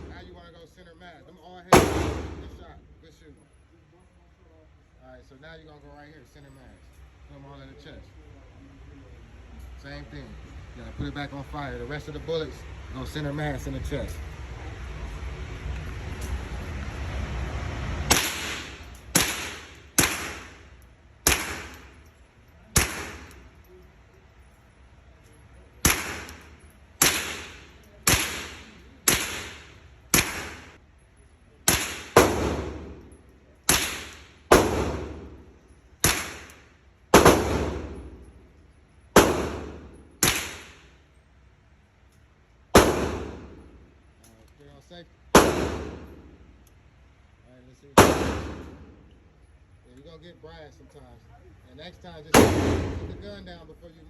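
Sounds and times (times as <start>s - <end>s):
rifle shots cracking: 1.7s - 2.8s, 18.1s - 22.0s, 22.7s - 23.5s, 25.8s - 30.8s, 31.7s - 38.4s, 39.2s - 41.0s, 42.7s - 43.8s, 45.3s - 46.4s, 48.0s - 49.0s, 52.3s - 53.4s.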